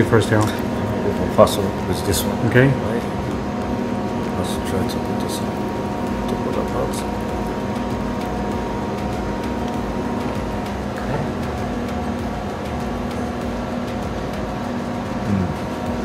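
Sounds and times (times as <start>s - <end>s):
faint constant tones: 0.0s - 16.0s
mechanical hum: 0.0s - 16.0s.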